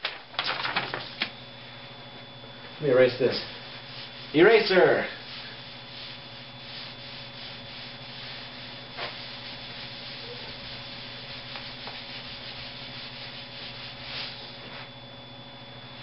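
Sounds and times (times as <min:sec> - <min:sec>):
eraser rubbing on board: 0:05.4 - 0:14.6.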